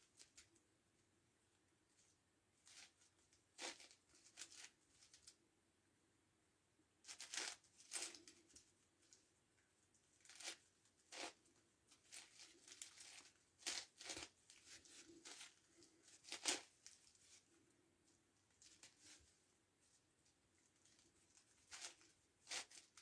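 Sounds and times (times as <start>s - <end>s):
puzzle cube plastic scrapes and clicks: 12.0s - 17.4s, 21.5s - 23.0s.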